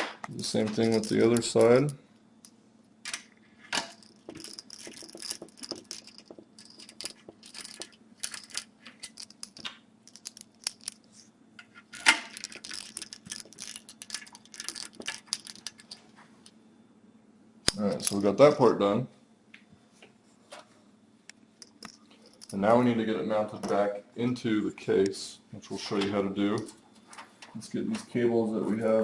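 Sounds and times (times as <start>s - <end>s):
small metallic clicks and scrapes: 3.1s - 16.0s.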